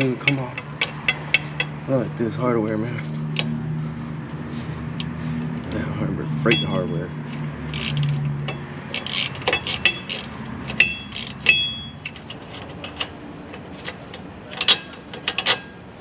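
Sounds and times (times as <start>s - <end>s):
metal bolts and nuts clinking: 7.8s - 15.8s.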